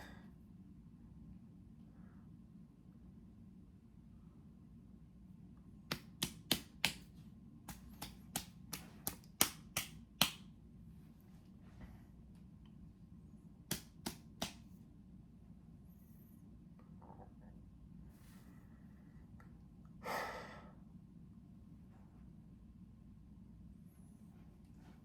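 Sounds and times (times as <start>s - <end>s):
sharp smacks: 5.9s - 7.1s, 7.7s - 10.4s, 13.7s - 14.6s.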